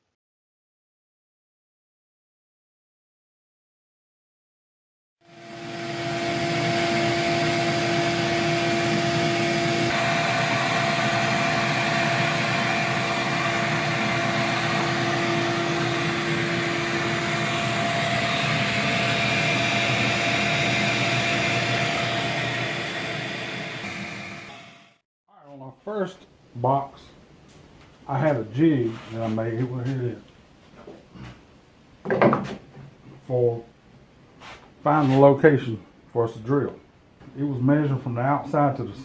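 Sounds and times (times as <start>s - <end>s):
motor humming: 5.3s - 25.0s.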